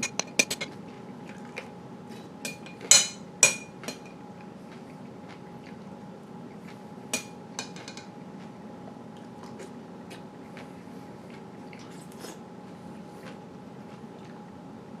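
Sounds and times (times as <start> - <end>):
wet chewing and smacking: 0.3 - 1.8, 3.9 - 7.0, 8.2 - 14.6
spoon clinking on bowl: 2.5 - 4.2.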